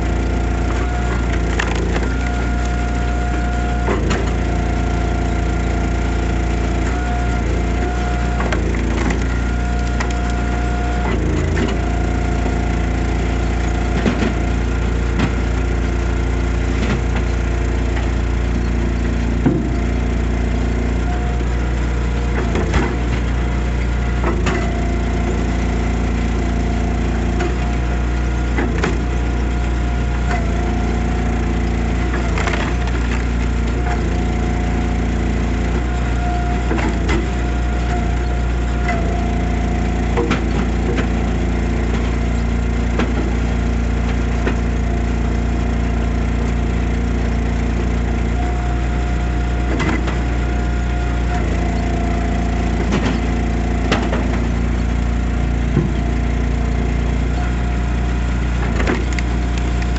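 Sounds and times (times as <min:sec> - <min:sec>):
log splitter engine running: 0:00.0 - 0:59.9
wood cracking and splintering: 0:00.2 - 0:04.5, 0:07.6 - 0:16.0, 0:31.4 - 0:34.4.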